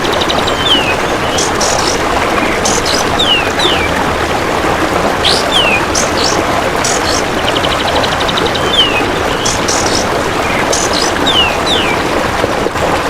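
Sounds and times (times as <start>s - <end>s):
running water: 0.0s - 13.0s
songbird whistling: 0.5s - 3.9s, 5.2s - 7.3s, 8.6s - 12.0s.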